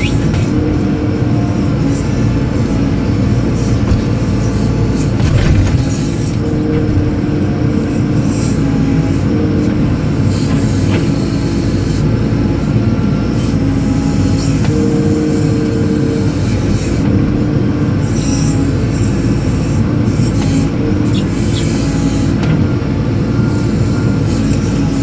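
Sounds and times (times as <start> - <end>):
diesel engine running: 0.0 - 25.0
hydraulic whining: 0.0 - 25.0.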